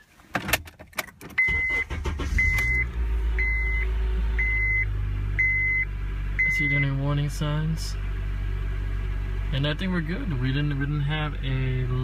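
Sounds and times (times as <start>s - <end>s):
car engine starting and idling: 0.0s - 12.0s
dashboard warning chime beeping: 1.4s - 7.0s.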